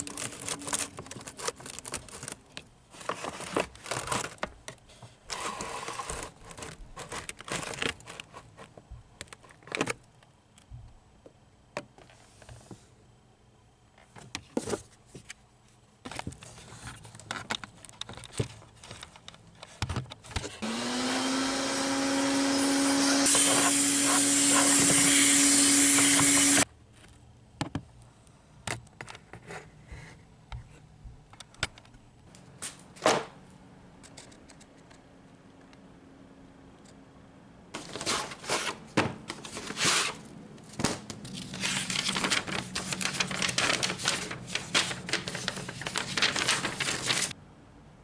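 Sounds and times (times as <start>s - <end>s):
electric motor and fan whirring: 16.1s - 27.5s.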